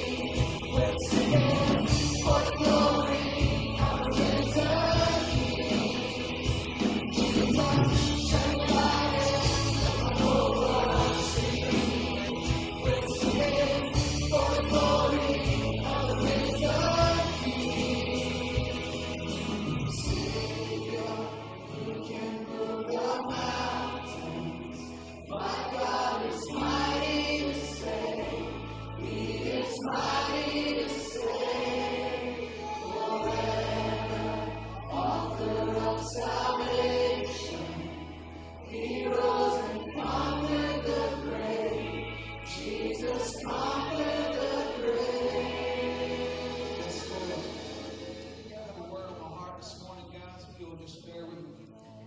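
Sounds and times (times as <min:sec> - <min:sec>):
bass line: 0:00.0 - 0:21.9
congregation singing: 0:00.0 - 0:52.0.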